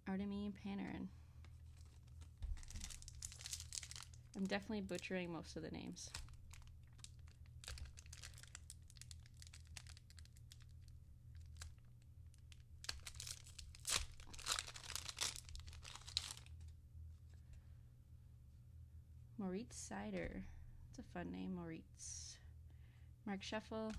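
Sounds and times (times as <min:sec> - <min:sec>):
wrapper tearing and crinkling: 0:01.6 - 0:05.1, 0:06.0 - 0:16.6.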